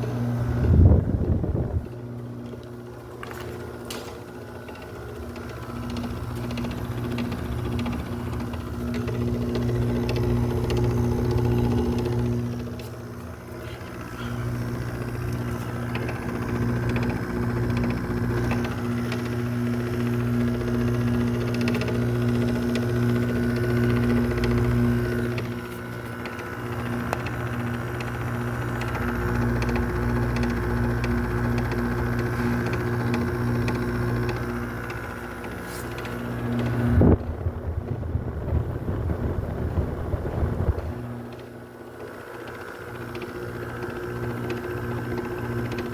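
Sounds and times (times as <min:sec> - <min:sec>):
fan rushing: 0:00.0 - 0:45.9
window air conditioner humming: 0:00.0 - 0:45.9
uneven low rumble: 0:36.9 - 0:41.1.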